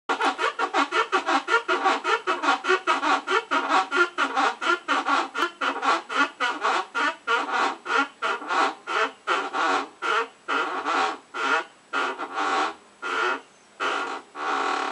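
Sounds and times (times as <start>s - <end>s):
creaking squeak: 0.1s - 14.9s.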